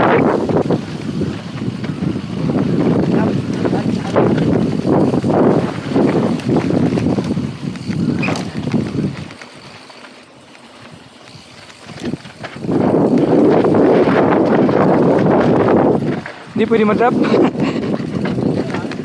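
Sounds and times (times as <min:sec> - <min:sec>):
wind buffeting microphone: 0:00.0 - 0:09.9, 0:10.8 - 0:19.0
bike tyres rolling over trail: 0:00.0 - 0:19.0.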